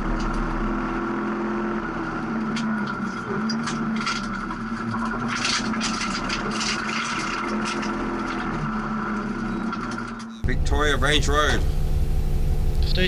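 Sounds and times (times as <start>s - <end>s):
car engine running: 0.0s - 13.0s
crunching and rattling: 2.5s - 10.4s.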